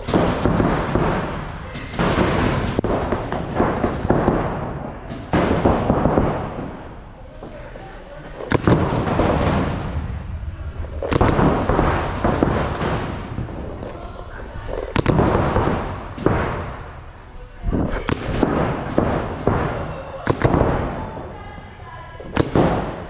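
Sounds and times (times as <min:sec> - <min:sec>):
background noise: 0:00.0 - 0:23.0
paintball markers firing: 0:08.4 - 0:09.7, 0:14.7 - 0:16.8, 0:17.9 - 0:20.9, 0:22.3 - 0:23.0.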